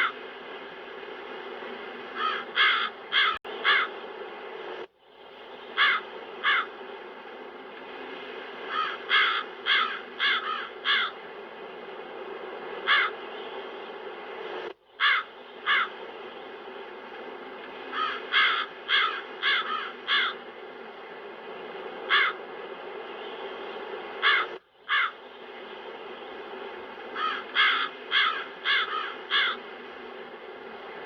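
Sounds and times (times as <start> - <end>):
steady wind: 0.0 - 31.0
crows cawing: 2.2 - 4.0, 5.8 - 6.8, 8.7 - 11.2, 12.8 - 13.2, 15.0 - 16.0, 17.9 - 20.4, 22.1 - 22.4, 24.2 - 25.2, 27.2 - 29.6.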